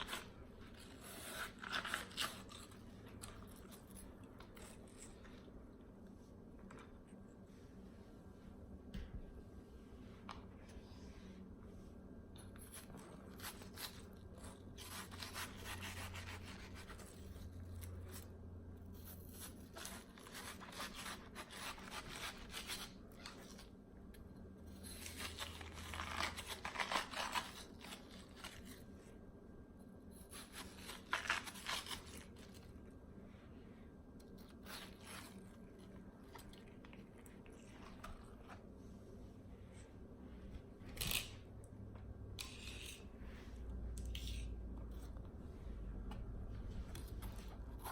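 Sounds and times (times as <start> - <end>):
biting and chewing watermelon: 0.0 - 5.2.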